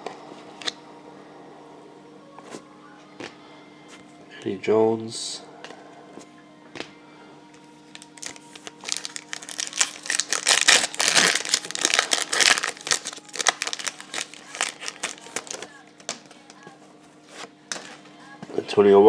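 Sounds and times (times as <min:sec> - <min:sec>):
wrapper tearing and crinkling: 0:07.9 - 0:16.7.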